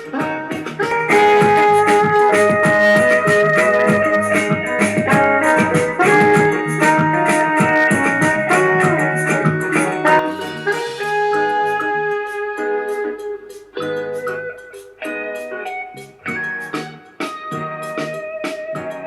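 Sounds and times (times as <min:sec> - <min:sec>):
music from portable speaker: 0:00.8 - 0:19.0.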